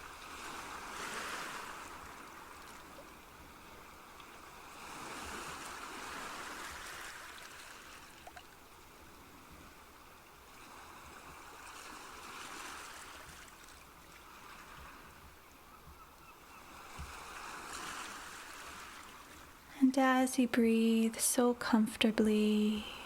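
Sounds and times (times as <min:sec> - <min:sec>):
rushing water: 0:00.0 - 0:08.9, 0:16.5 - 0:19.8.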